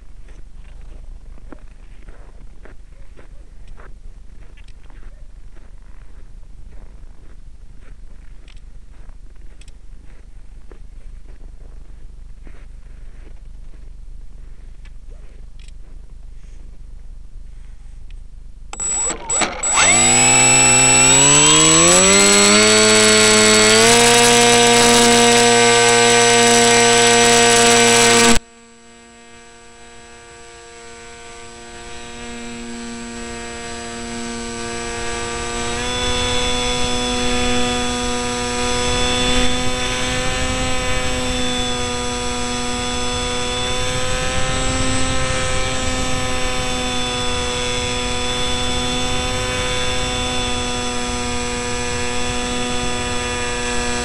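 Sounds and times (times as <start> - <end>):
electric motor and propeller whine: 18.7 - 54.0.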